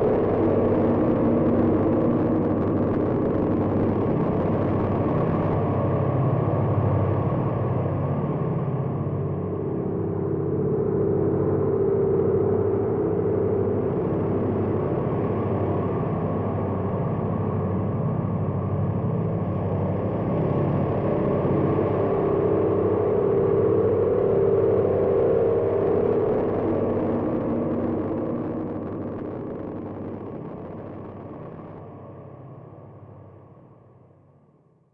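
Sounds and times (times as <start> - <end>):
low humming drone: 0.0 - 34.0.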